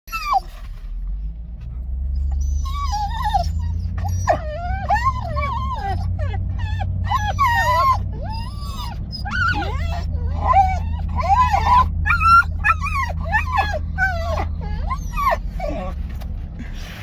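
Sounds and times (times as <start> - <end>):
dogs whining: 0.0 - 0.7, 2.0 - 16.4
steady low rumble: 0.7 - 17.0.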